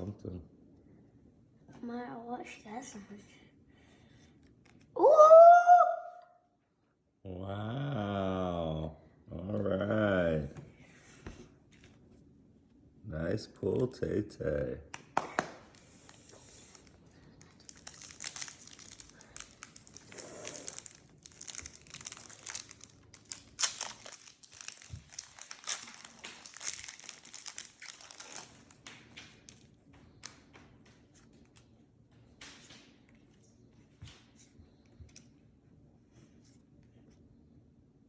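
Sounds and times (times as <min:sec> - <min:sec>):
cards rustling and clicking: 0:15.0 - 0:31.7
foil wrapper crinkling: 0:15.7 - 0:30.4.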